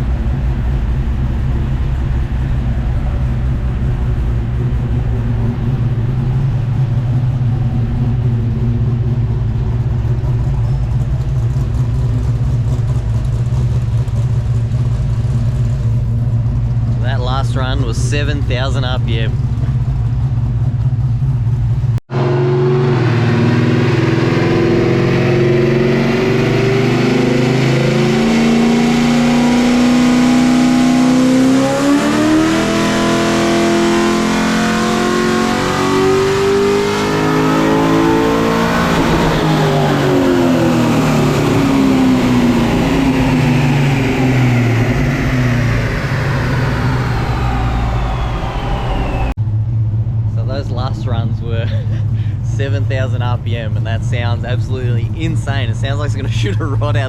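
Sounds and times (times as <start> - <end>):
engine revving at full throttle: 22.1 - 49.4.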